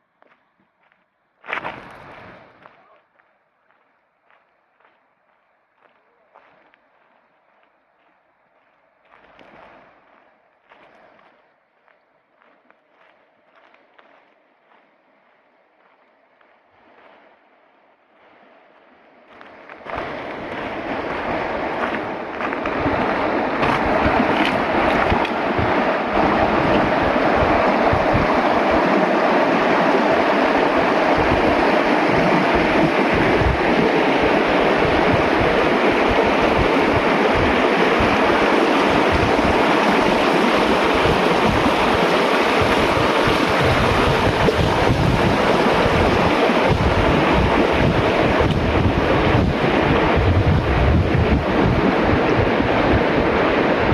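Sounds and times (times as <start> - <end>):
loud steady rushing noise: 16.8 - 53.9
wind buffeting microphone: 18.2 - 53.9.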